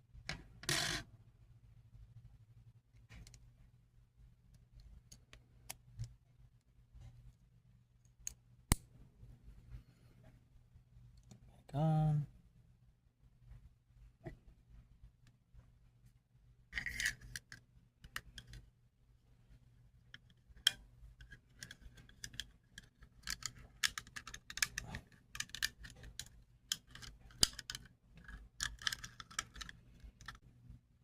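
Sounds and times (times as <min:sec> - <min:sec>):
small parts clicking and scraping: 0:00.3 - 0:01.1, 0:16.7 - 0:18.7, 0:20.0 - 0:30.5.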